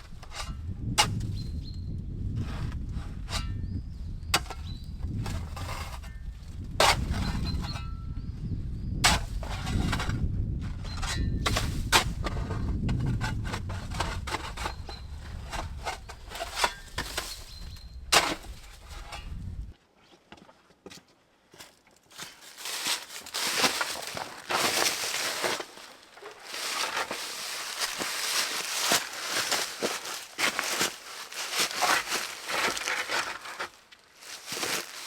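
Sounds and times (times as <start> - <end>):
steady low rumble: 11.4 - 19.7.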